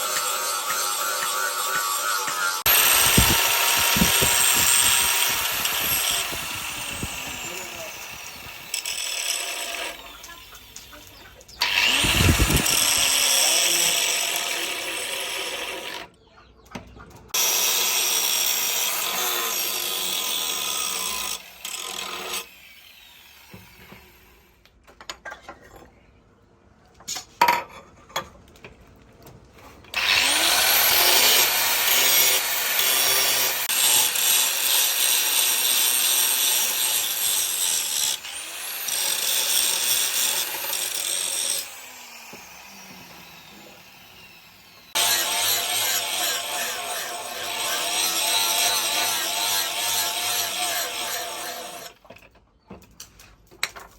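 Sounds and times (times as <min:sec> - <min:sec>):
power tool grinding: 0:00.0 - 0:16.1, 0:29.9 - 0:52.0.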